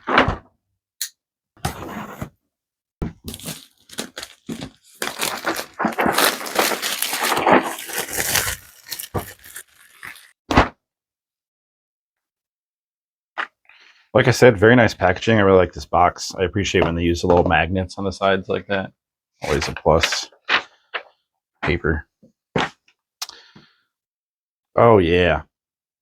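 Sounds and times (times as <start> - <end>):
cardboard packaging scraping and rustling: 3.2 - 10.4.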